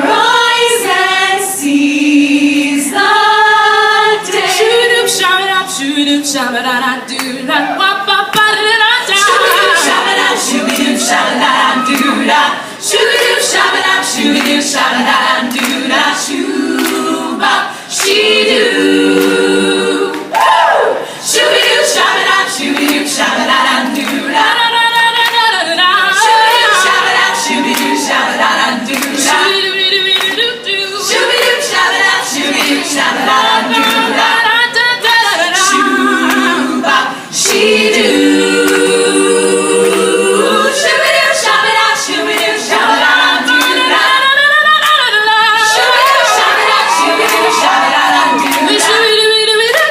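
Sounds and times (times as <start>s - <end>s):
women singing a cappella: 0.0s - 49.9s.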